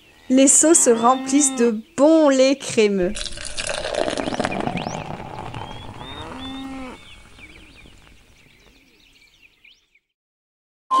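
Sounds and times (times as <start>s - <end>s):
cow mooing: 0.6s - 1.7s, 4.8s - 8.2s
milk squirting into a pail: 3.1s - 7.5s.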